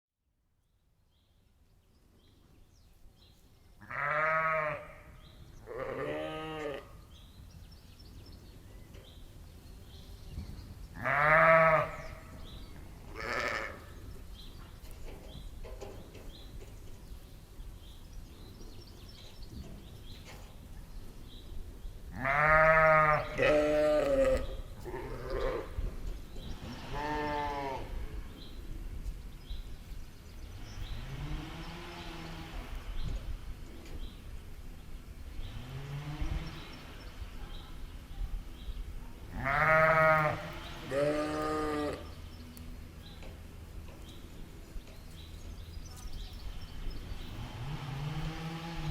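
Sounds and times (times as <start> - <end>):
low background noise: 0.2 - 48.9
sheep and lamb bleating: 3.8 - 7.0, 11.0 - 12.3, 13.1 - 14.0, 22.1 - 25.8, 26.8 - 28.0, 39.2 - 42.2.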